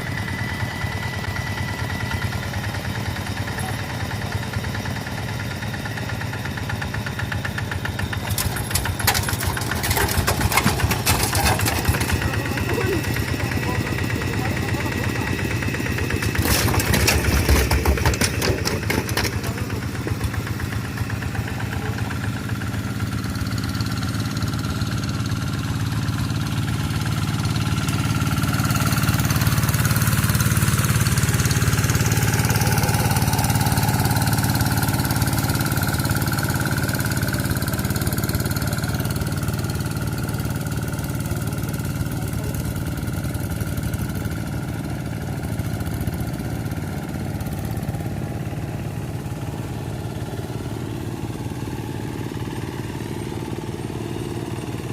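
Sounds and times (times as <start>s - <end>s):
diesel engine running: 0.0s - 54.9s.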